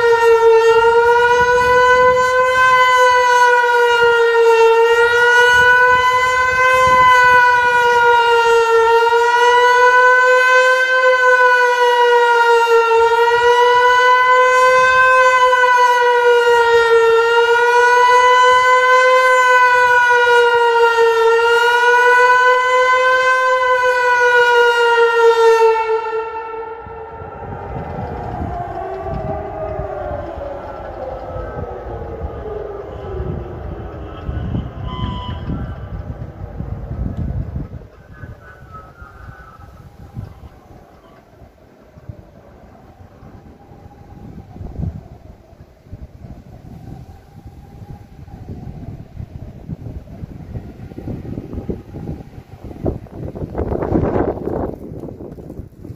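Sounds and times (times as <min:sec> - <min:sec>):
rising and falling siren howl: 0:00.0 - 0:55.9
low rumble: 0:26.8 - 0:41.0.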